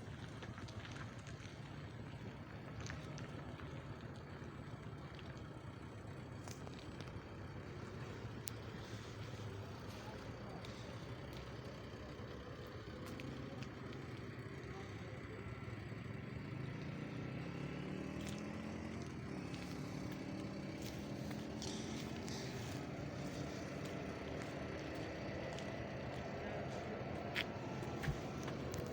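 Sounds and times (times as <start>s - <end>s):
vehicle engine revving up: 16.0s - 28.9s.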